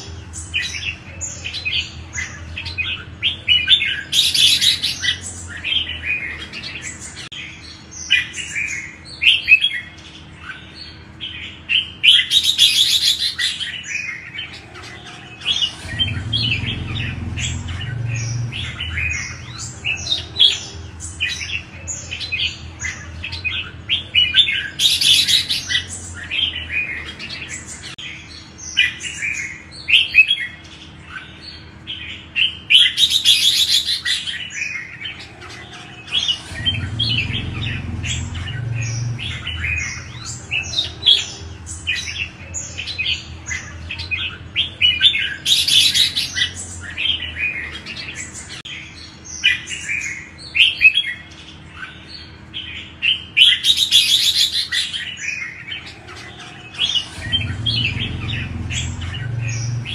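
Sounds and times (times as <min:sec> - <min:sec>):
bird singing chirped phrases: 0:00.0 - 0:59.9
low rumble: 0:15.5 - 0:21.3, 0:36.3 - 0:42.5, 0:57.0 - 0:59.9.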